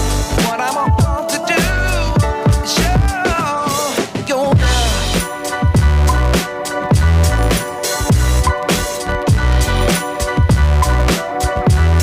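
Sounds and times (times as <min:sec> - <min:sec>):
person singing: 0:00.0 - 0:05.5
music with beat and bass: 0:00.0 - 0:12.0.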